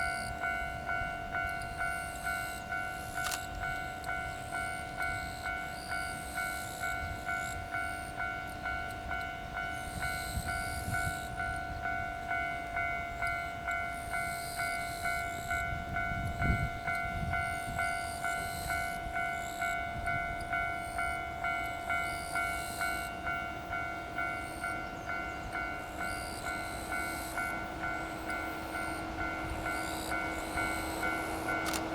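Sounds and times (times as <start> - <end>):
freight train rumbling: 0.0 - 31.9
level-crossing warning bell ringing: 0.0 - 31.9
train wheel clatter: 9.7 - 31.9.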